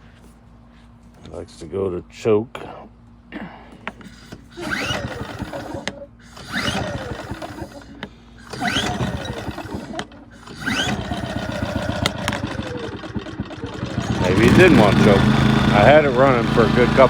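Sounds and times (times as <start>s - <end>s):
generator engine running: 3.8s - 17.0s
generator recoil pull-start: 3.8s - 17.0s.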